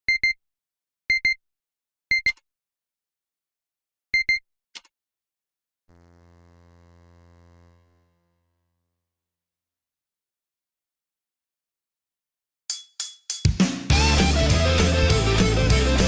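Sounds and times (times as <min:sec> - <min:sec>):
low buzzing tone: 0:05.9 - 0:08.9.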